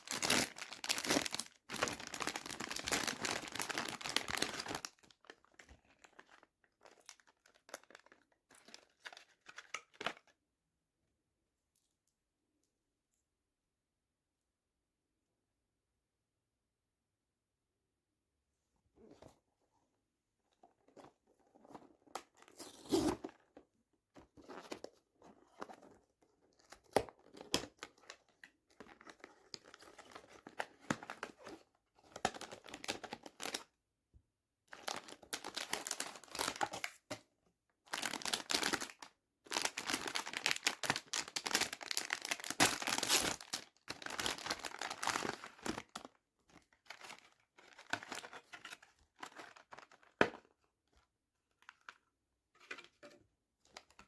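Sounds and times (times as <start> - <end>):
packaging tearing and crinkling: 0.0 - 5.0, 37.9 - 45.9.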